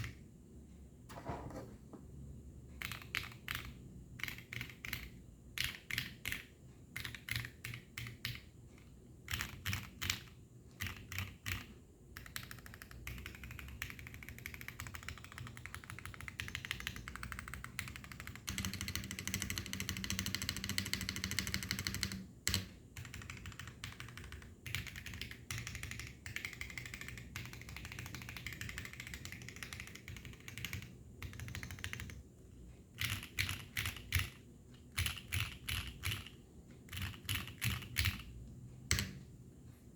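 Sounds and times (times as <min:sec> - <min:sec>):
mechanical keyboard typing: 0:02.8 - 0:08.5, 0:09.2 - 0:32.2, 0:32.9 - 0:38.3, 0:38.9 - 0:39.2.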